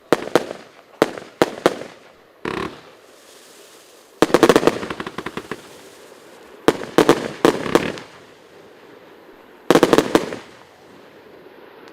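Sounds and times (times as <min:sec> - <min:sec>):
firework rapid sharp bangs: 0:00.1 - 0:02.9, 0:04.2 - 0:08.2, 0:09.7 - 0:10.6.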